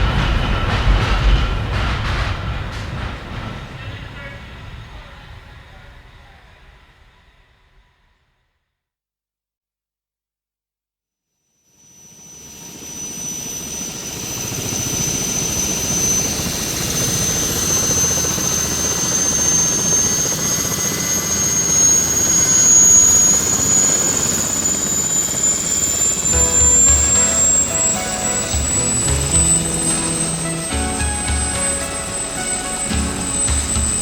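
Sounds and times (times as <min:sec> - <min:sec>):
aircraft engine whine: 0:12.2 - 0:34.0
music: 0:26.3 - 0:34.0.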